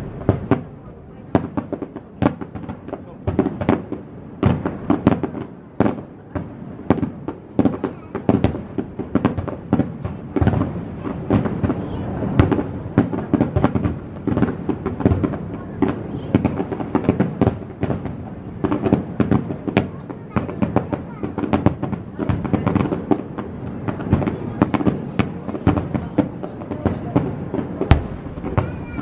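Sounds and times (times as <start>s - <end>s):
fireworks bursting: 0.0s - 29.0s.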